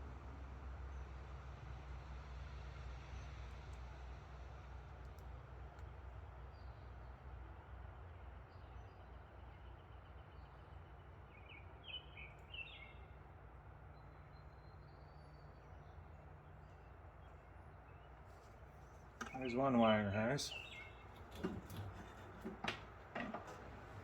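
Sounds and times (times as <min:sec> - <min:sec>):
faint bird chirps: 0:13.9 - 0:18.2.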